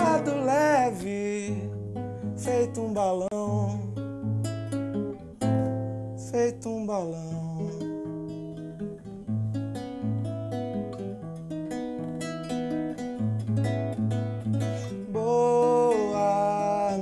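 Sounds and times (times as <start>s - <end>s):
person singing: 0.0s - 4.0s, 6.2s - 8.5s, 14.6s - 17.0s
acoustic guitar picking: 0.0s - 17.0s.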